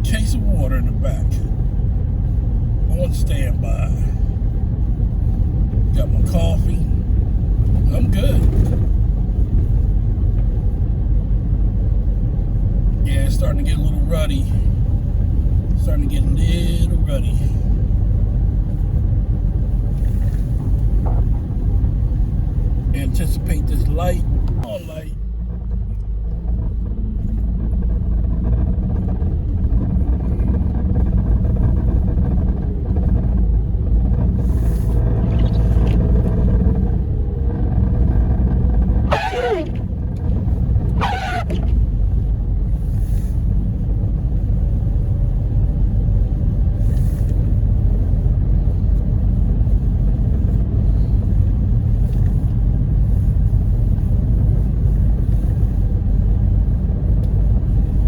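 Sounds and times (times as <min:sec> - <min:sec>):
car driving on snowy road: 0:00.0 - 0:58.0
windshield wiper squeaking: 0:38.8 - 0:41.9.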